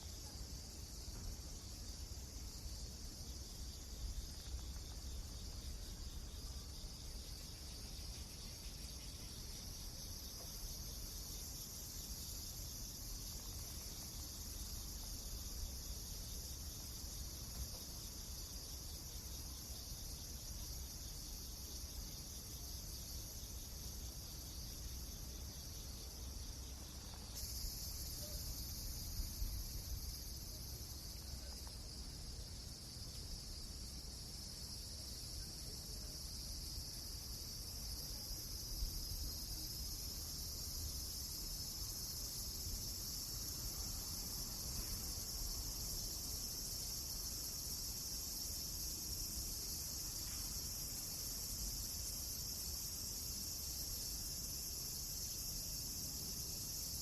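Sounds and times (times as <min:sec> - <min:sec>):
high-pitched chirring hiss: 0:00.0 - 0:57.0.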